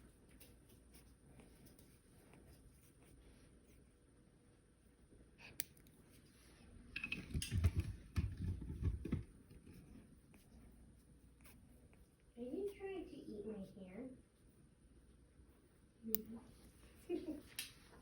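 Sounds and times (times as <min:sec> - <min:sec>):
rustling and bumping: 0:07.1 - 0:09.8.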